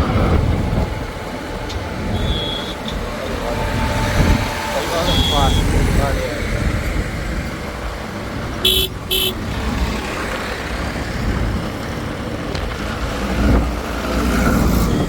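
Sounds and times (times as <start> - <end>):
vehicle engine running: 0.0 - 15.0
horn toots: 2.0 - 6.2, 8.6 - 9.4.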